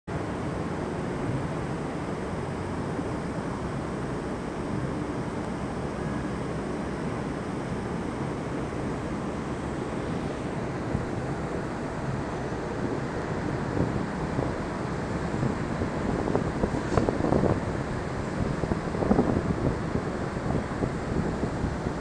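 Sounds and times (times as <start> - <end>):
city traffic: 0.1 - 22.0
wind on microphone: 0.2 - 22.0.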